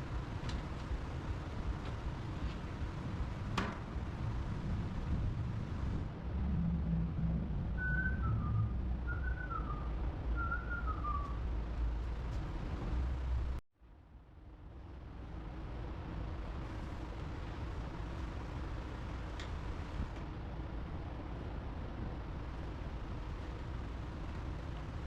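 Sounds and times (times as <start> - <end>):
low rumble: 2.8 - 13.6.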